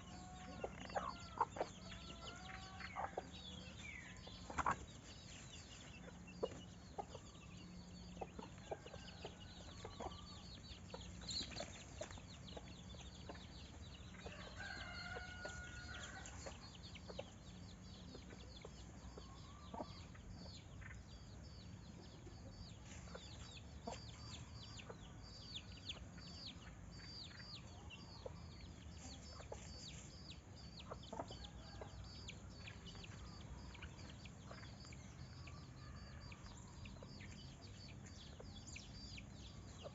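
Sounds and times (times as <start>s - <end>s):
chickens clucking: 0.0s - 39.9s.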